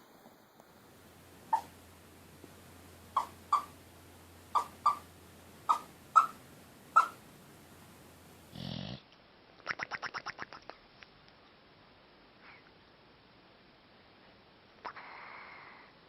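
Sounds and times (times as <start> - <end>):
sleeping dog yipping: 1.4 - 1.8, 3.1 - 3.8, 4.5 - 7.3.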